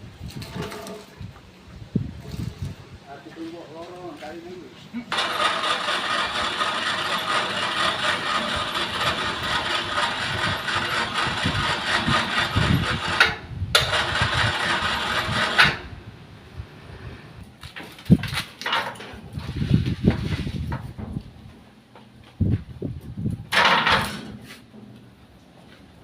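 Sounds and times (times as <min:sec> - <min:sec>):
wood saw machine running: 0:05.1 - 0:15.8.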